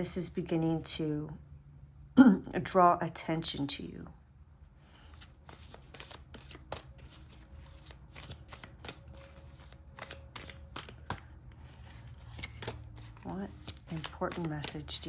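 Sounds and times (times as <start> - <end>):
cards being shuffled: 5.0 - 15.0.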